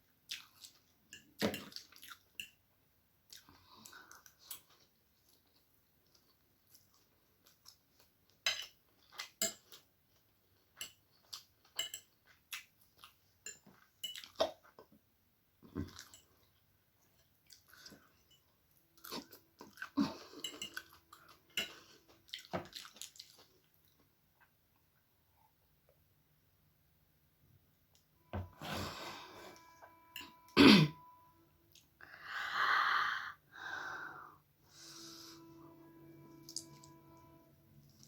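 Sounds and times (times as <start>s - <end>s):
person chewing noodles: 0.2s - 2.5s, 3.3s - 13.2s, 13.8s - 14.9s, 15.6s - 18.3s, 19.0s - 24.0s.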